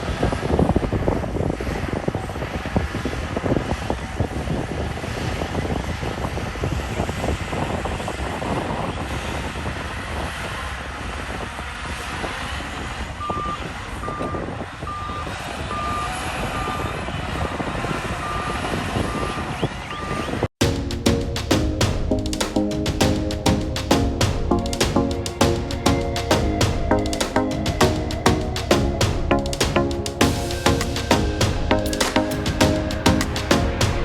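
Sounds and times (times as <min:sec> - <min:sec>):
reversing alarm beeping: 0:13.2 - 0:17.6
tracks clanking: 0:20.6 - 0:34.0.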